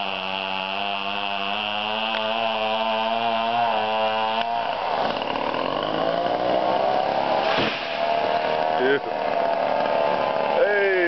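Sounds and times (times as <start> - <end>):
chainsaw running: 0.0 - 11.0.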